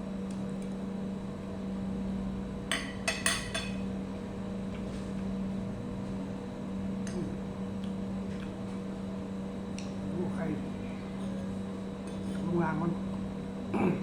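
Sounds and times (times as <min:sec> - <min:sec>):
steady low hum: 0:00.0 - 0:14.0
cutlery clinking on a plate: 0:02.7 - 0:03.8.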